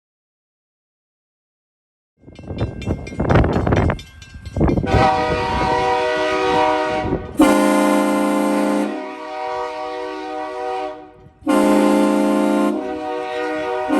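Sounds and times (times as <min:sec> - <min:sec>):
air horn blasts: 0:04.8 - 0:13.9.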